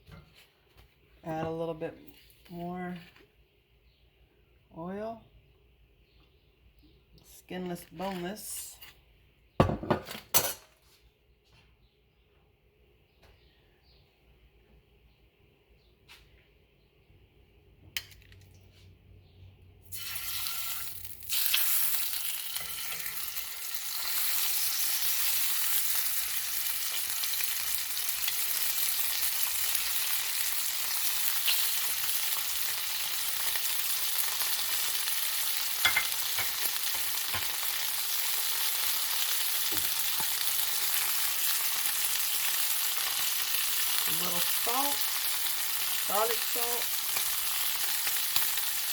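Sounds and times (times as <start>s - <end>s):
chicken sizzling in hot oil: 19.9s - 48.9s.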